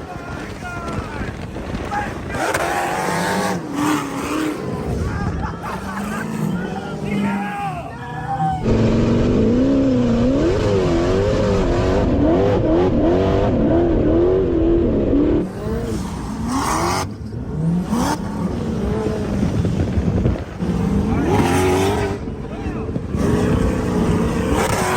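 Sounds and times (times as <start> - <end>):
engine revving hard: 8.6 - 19.6, 20.6 - 22.3, 23.1 - 24.9.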